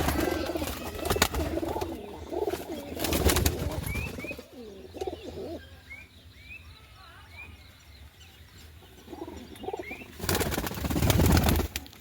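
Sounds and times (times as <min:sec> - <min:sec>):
pigeons cooing: 0:00.0 - 0:05.8, 0:09.0 - 0:11.7.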